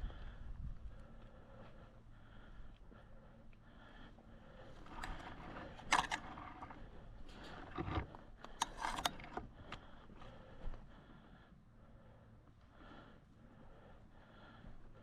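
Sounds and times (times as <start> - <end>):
gear clicks and rattles: 4.7 - 9.8.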